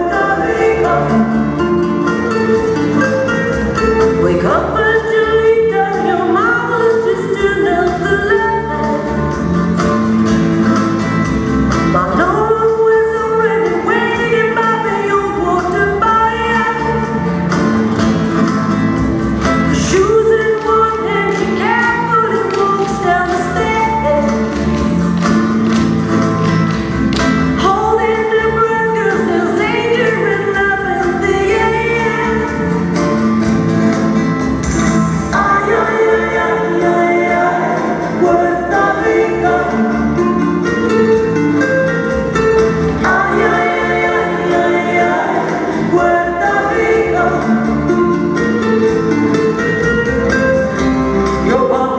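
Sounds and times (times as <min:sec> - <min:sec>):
person singing: 0:00.0 - 0:03.4, 0:04.0 - 0:09.4, 0:11.9 - 0:17.4, 0:19.6 - 0:25.2, 0:27.6 - 0:33.2, 0:34.8 - 0:41.7, 0:42.7 - 0:49.7, 0:51.2 - 0:51.9
latin dance beat: 0:00.0 - 0:51.9.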